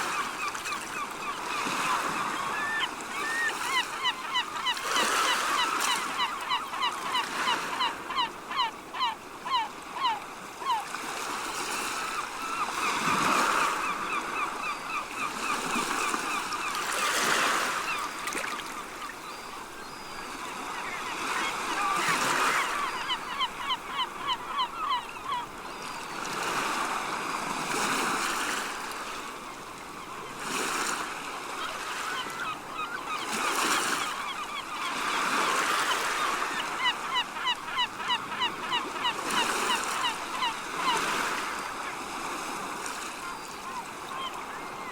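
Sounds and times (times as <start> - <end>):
seagulls calling: 0.0 - 44.9.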